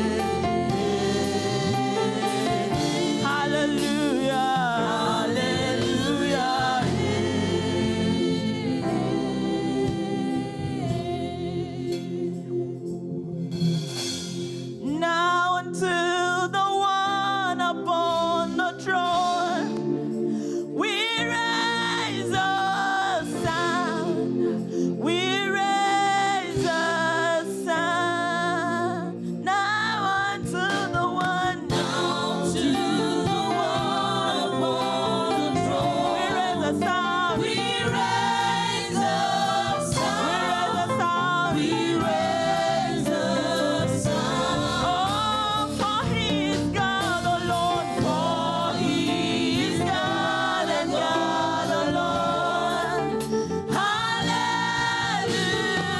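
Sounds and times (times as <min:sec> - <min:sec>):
musical accompaniment: 0:00.0 - 0:15.0, 0:30.5 - 0:55.9
choir singing gospel song: 0:00.0 - 0:55.9.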